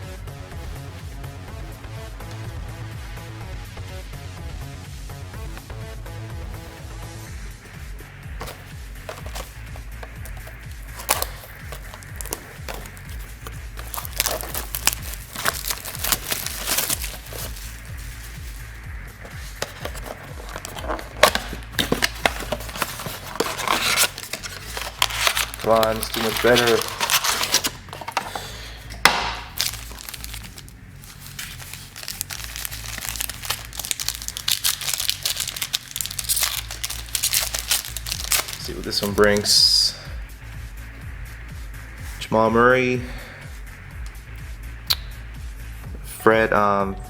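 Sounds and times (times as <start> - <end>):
wrapper crinkling and tearing: 8.4 - 39.6.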